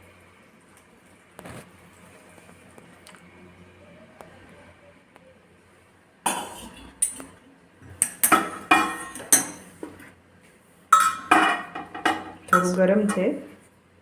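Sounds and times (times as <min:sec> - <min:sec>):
metal spoon clinking on metal bowl: 0:06.3 - 0:07.3, 0:08.0 - 0:10.0, 0:11.0 - 0:13.5.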